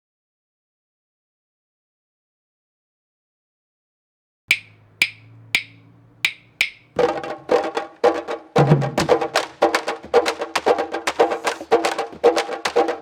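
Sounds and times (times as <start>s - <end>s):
sharp wooden clicks on drum shells: 4.5s - 7.4s
drums playing fast rhythm: 4.5s - 13.0s.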